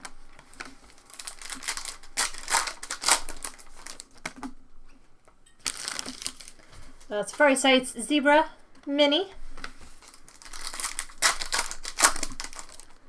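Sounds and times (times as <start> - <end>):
wrappers crinkling: 0.0 - 4.6, 5.2 - 7.6, 9.4 - 13.0
cards rustling: 0.4 - 4.5, 5.6 - 7.4, 9.6 - 13.0.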